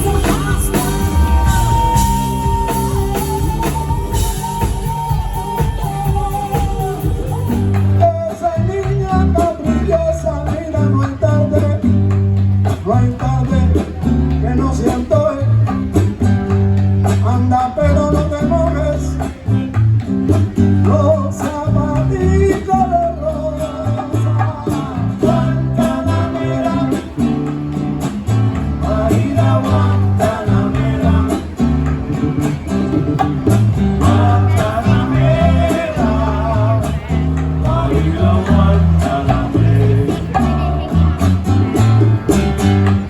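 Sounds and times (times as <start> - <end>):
person singing: 0.0 - 12.1, 34.0 - 42.0
bass line: 0.0 - 43.0
guitar: 0.0 - 43.0.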